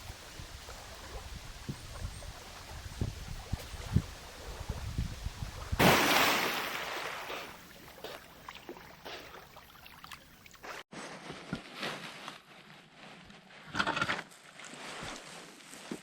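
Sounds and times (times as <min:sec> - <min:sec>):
water splashing: 0:00.0 - 0:10.8.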